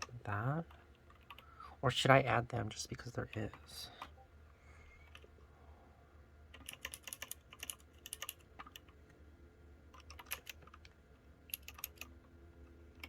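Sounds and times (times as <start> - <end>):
mechanical keyboard typing: 0.0 - 1.5, 6.5 - 9.0, 9.9 - 10.9, 11.5 - 12.2.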